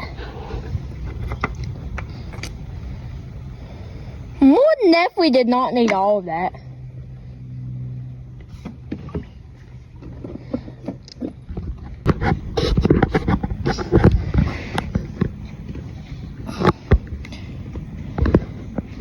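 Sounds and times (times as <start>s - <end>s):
low steady hum: 0.0s - 19.0s
knocks and clunks of handling: 8.4s - 19.0s.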